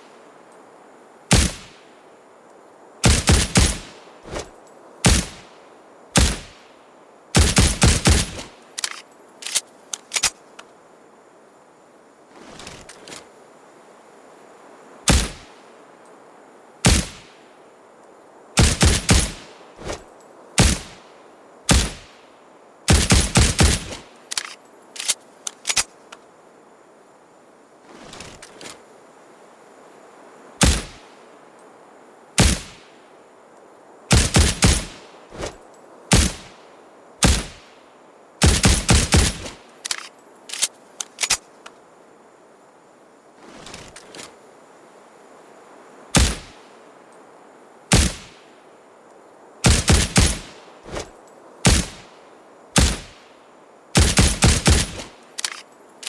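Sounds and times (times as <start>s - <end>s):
faint clicks: 8.3s - 10.8s, 23.9s - 26.3s, 39.1s - 41.8s, 55.0s - 56.0s
suppressed pistol shots: 32.4s - 32.8s, 34.1s - 35.0s, 37.2s - 37.6s, 46.2s - 46.6s, 47.9s - 48.4s, 49.7s - 50.6s, 51.7s - 52.0s.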